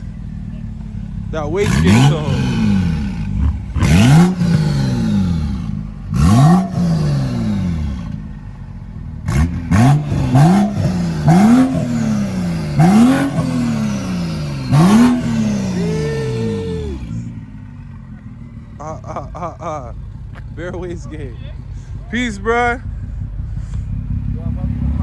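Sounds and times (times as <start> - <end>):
car engine revving: 0.0 - 25.0.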